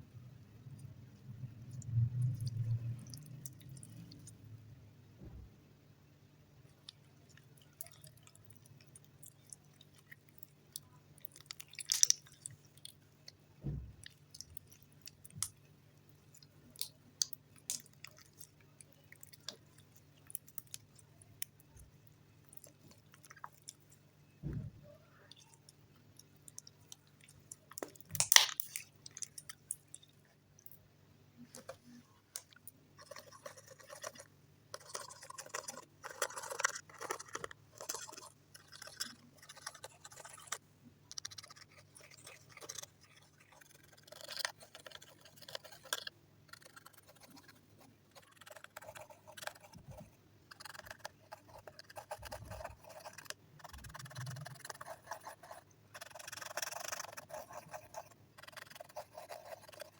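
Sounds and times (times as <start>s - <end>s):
slime sticky clicking and popping: 11.3s - 12.5s.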